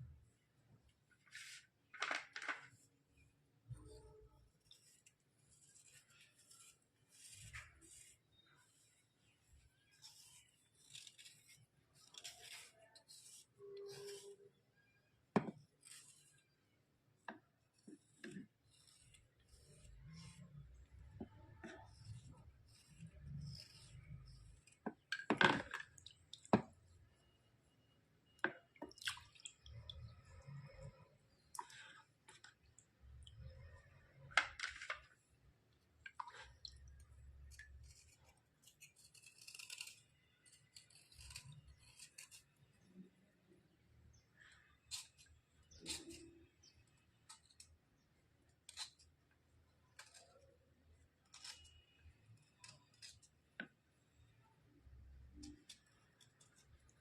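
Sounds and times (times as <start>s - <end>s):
pencils scraping: 1.3s - 2.9s, 3.8s - 14.6s, 15.4s - 16.6s, 17.7s - 26.7s.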